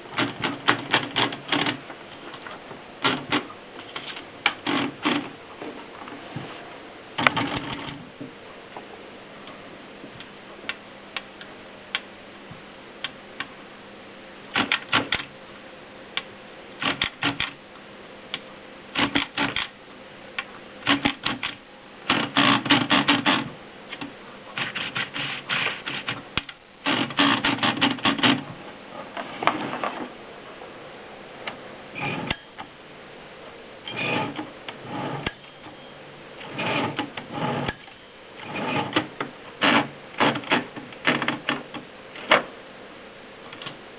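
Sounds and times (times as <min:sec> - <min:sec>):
manual typewriter typing: 0:00.2 - 0:01.8, 0:07.2 - 0:08.0, 0:14.6 - 0:15.3, 0:16.8 - 0:17.6, 0:19.0 - 0:19.7, 0:20.8 - 0:23.5, 0:26.9 - 0:28.4.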